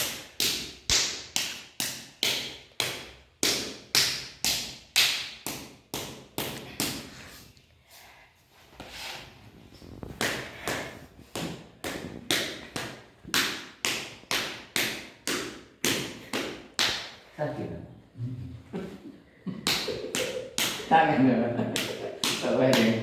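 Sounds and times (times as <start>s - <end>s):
open hand slapping body: 0.0s - 7.2s, 10.0s - 17.2s, 19.6s - 23.0s.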